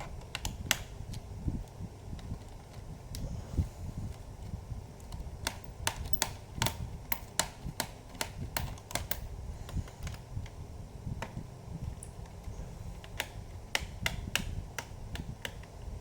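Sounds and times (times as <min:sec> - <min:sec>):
laptop key clicks: 0:05.0 - 0:09.2, 0:13.0 - 0:15.7.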